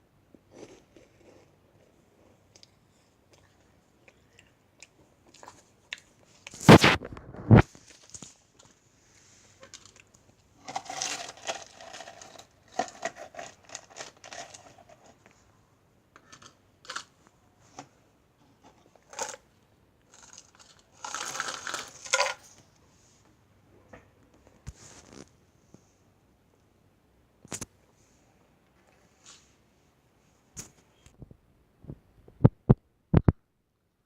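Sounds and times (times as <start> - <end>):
meringue cookies crunching: 9.6 - 15.4, 16.2 - 17.2, 18.8 - 22.6.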